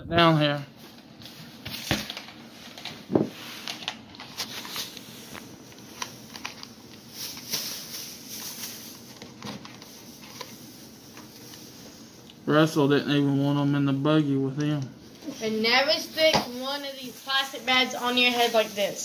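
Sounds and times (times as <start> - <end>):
objects being handled: 0.8 - 12.0.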